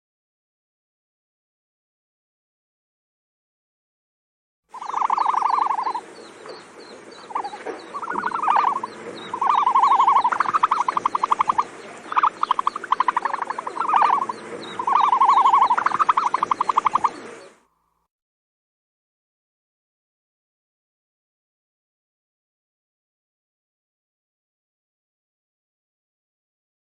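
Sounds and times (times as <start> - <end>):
ostrich trilling calls: 4.7 - 17.7.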